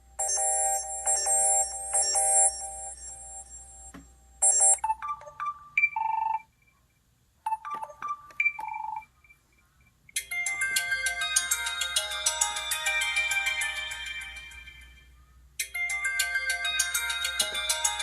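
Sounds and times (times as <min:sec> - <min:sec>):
phone ringtone electronic notes: 0:00.0 - 0:06.5, 0:10.2 - 0:15.0, 0:15.6 - 0:18.0
phone ringtone melody: 0:00.1 - 0:06.5, 0:07.5 - 0:09.1, 0:10.2 - 0:18.0.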